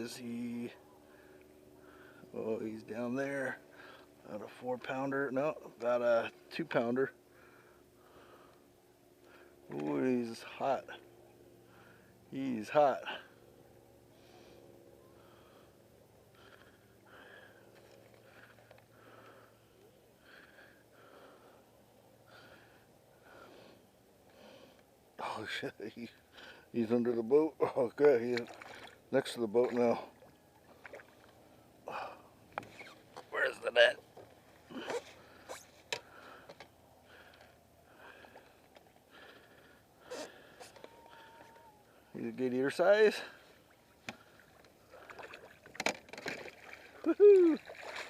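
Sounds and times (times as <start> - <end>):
faint low hum: 0.0 - 48.0
faint breathing and sniffing: 34.6 - 41.4.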